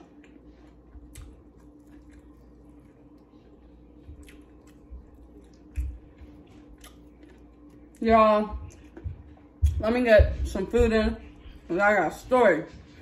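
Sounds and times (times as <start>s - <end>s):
person chewing food: 0.0s - 9.7s
faint steady hum: 0.0s - 13.0s.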